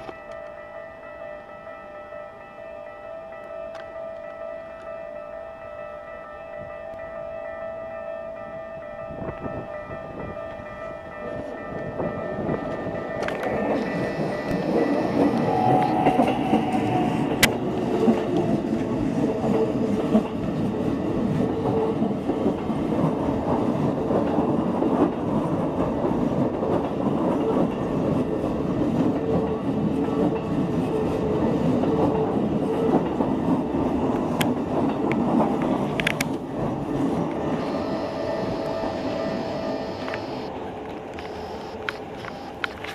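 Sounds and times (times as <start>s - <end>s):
humming tone: 9.0s - 17.6s, 37.5s - 42.9s
train wheels rumbling on rails: 9.0s - 41.2s
clickety-clack over rail joints: 9.3s - 37.6s.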